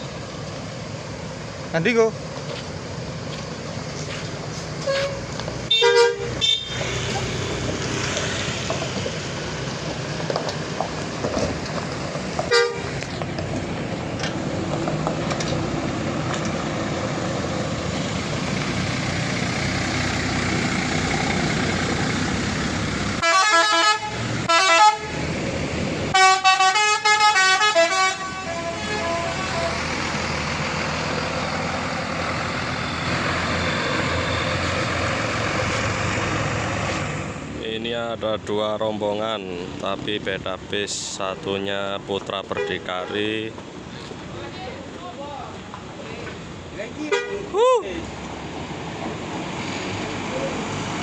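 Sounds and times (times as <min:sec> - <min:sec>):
road and engine noise: 0:00.0 - 0:51.0
short horn blip: 0:04.8 - 0:07.2
bus musical horn: 0:04.8 - 0:07.4, 0:12.5 - 0:13.0, 0:23.2 - 0:25.2, 0:26.1 - 0:29.9, 0:47.1 - 0:47.5.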